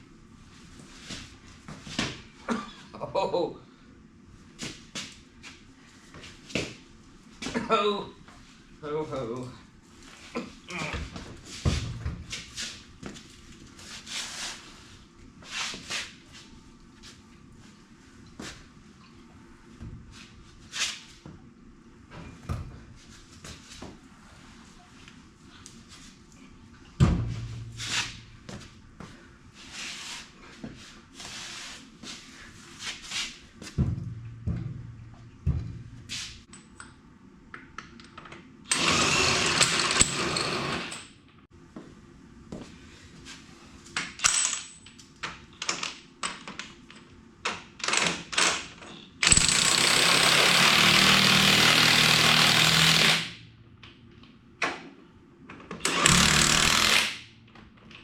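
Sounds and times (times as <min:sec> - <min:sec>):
impact wrench running: 0:38.7 - 0:41.0, 0:49.2 - 0:53.4, 0:55.8 - 0:57.3.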